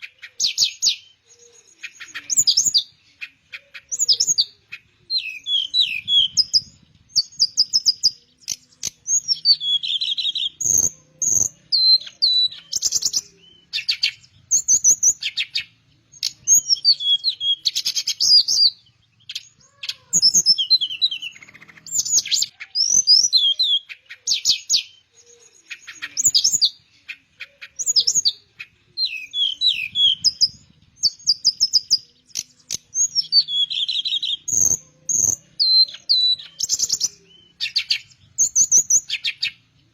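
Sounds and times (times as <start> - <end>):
flycatcher singing whistles and trills: 0.0 - 39.9.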